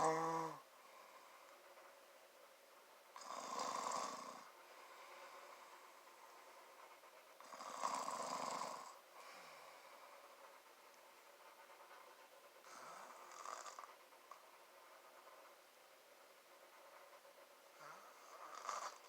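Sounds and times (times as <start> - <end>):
man snoring: 0.0 - 0.6, 3.2 - 4.5, 7.4 - 9.0, 18.4 - 19.0.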